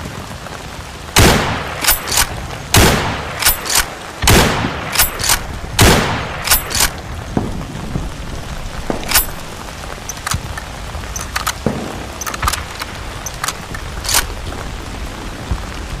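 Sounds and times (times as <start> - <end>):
rifle shot echoing: 1.2 - 7.0
sharp metallic clicks: 1.8 - 2.3, 3.4 - 3.9, 4.9 - 7.0, 9.0 - 9.4, 10.0 - 11.6, 12.2 - 14.3
faint cracks and pops: 6.4 - 14.8.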